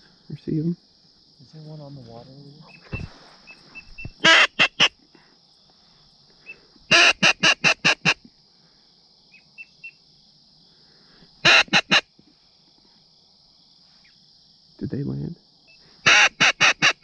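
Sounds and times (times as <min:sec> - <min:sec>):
insect drone: 0:00.0 - 0:17.0
duck call quacks: 0:04.2 - 0:05.0, 0:06.9 - 0:08.2, 0:11.4 - 0:12.1, 0:16.0 - 0:17.0.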